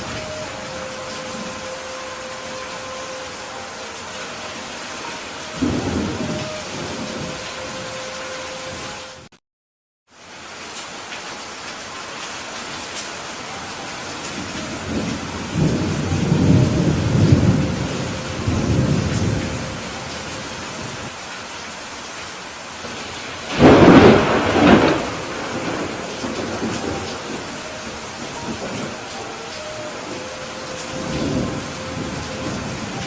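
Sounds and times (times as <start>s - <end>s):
heavy rain falling: 0.0s - 9.3s, 10.1s - 33.0s
rolling thunder rumble: 5.5s - 7.8s, 14.3s - 21.1s, 22.9s - 33.0s
loud thunder crack: 23.5s - 27.5s.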